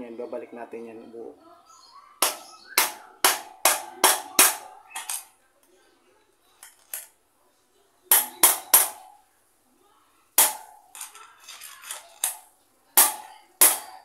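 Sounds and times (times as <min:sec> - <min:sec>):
hammer striking metal chisel: 0:02.2 - 0:05.2, 0:08.1 - 0:09.1, 0:10.4 - 0:11.1, 0:13.0 - 0:14.0.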